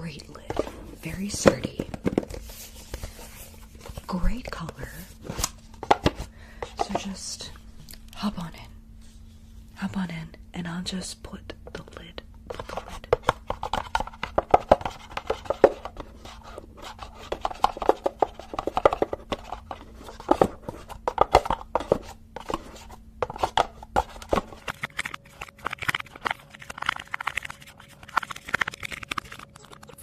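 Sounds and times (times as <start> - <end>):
hands tapping and scratching object: 12.5 - 30.0.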